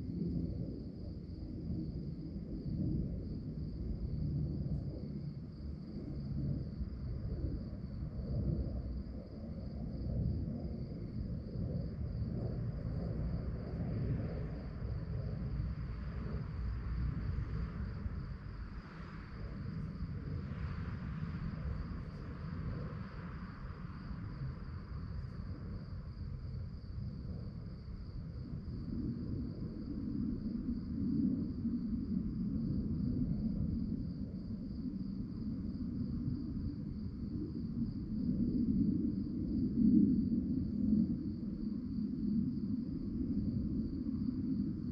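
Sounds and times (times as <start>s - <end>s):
crickets chirping: 0.0s - 44.9s
low background rumble: 0.0s - 44.9s.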